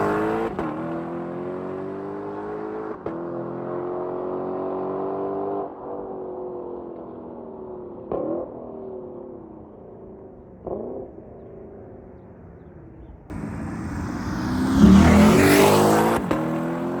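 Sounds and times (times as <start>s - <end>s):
car engine idling: 13.3s - 16.4s
loud engine revving: 13.3s - 17.0s.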